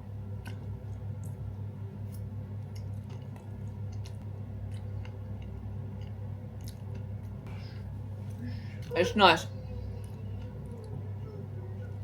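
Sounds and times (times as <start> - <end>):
steady low hum: 0.0 - 12.0
person chewing cake: 0.2 - 7.5.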